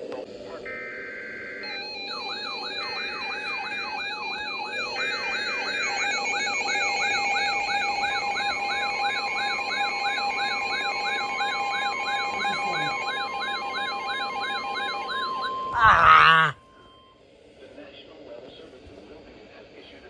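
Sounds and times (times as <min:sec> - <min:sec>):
warbling alarm: 0:01.6 - 0:17.1.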